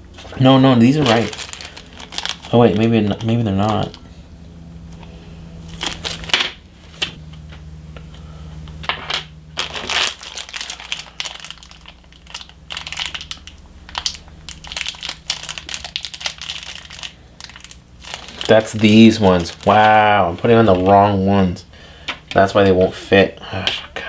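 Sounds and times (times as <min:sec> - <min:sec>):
packaging crinkling and rustling: 0:00.1 - 0:04.2, 0:04.9 - 0:07.2, 0:08.8 - 0:21.2.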